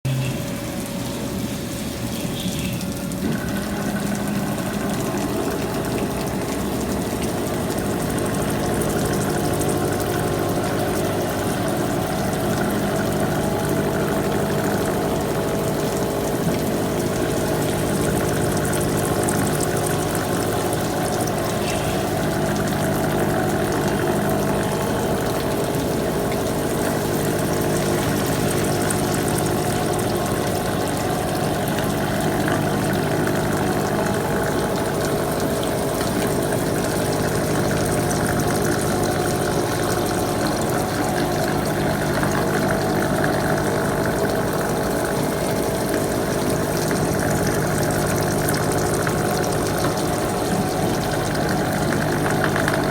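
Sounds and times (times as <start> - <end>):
machinery humming steadily: 0.0 - 52.9.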